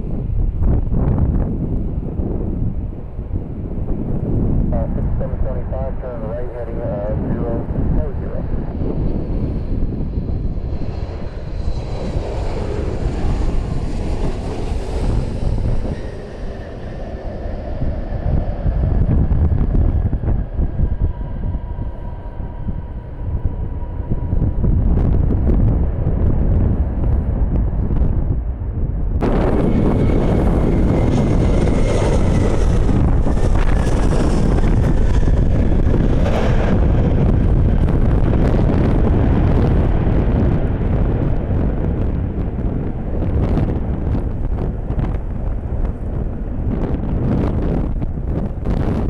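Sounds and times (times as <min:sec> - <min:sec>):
wind buffeting microphone: 0:00.0 - 0:49.0.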